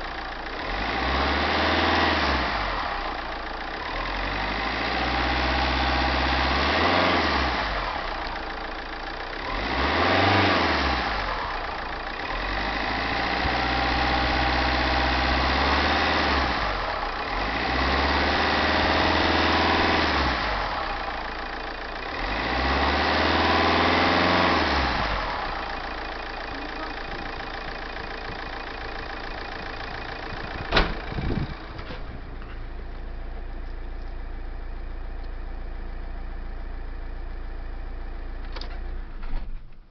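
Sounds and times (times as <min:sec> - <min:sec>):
car engine revving: 0:00.0 - 0:03.2, 0:03.8 - 0:08.5, 0:09.3 - 0:32.1.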